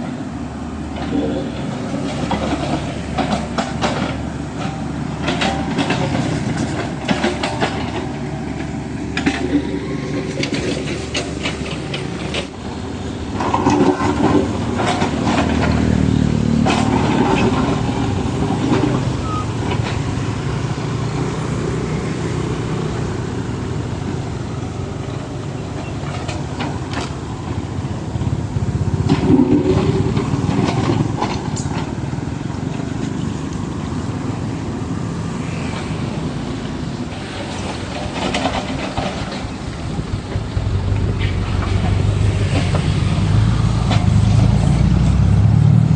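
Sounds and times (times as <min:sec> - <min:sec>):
excavator diesel engine revving: 0:00.0 - 0:45.9
knocks and clatter: 0:00.9 - 0:12.6, 0:13.4 - 0:20.7, 0:28.8 - 0:33.7, 0:37.1 - 0:44.9.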